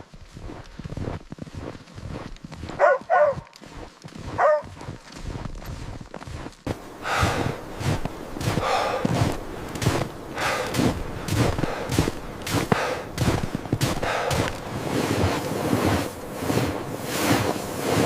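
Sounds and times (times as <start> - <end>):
dog barking: 2.8 - 3.5, 4.4 - 4.8
rhythmic crunching thuds: 5.4 - 15.4.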